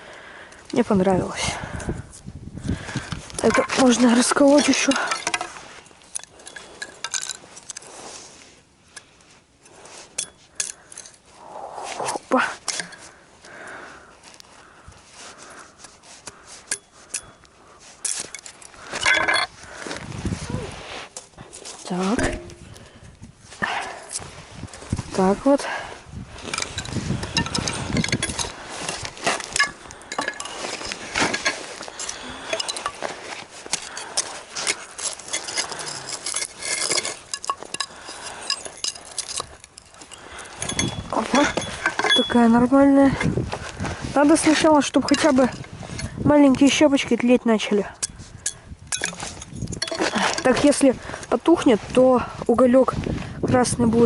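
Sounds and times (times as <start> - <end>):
blade splitting wooden kindling: 26.5 - 42.4.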